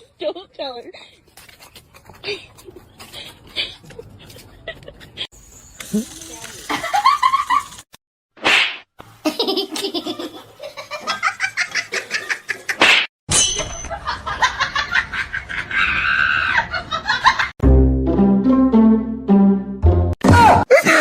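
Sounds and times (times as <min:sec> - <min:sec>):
people laughing: 0:03.5 - 0:05.3, 0:06.7 - 0:07.8, 0:09.3 - 0:12.8, 0:13.9 - 0:17.5.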